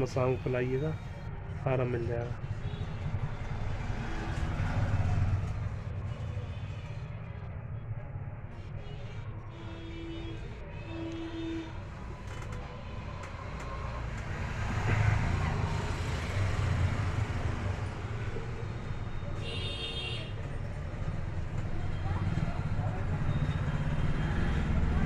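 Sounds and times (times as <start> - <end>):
road traffic rumble: 0.0 - 25.0
car horn toots: 19.4 - 20.3.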